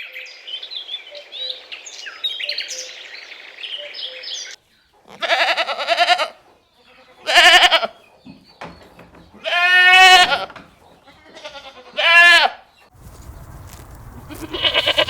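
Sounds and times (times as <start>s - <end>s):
farm animal bleating: 5.0s - 8.0s, 9.3s - 15.0s.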